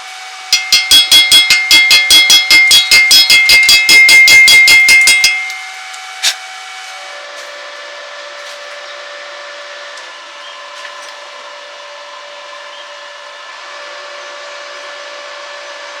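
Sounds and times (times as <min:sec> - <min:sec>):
faint steady whine: 0:00.0 - 0:07.8.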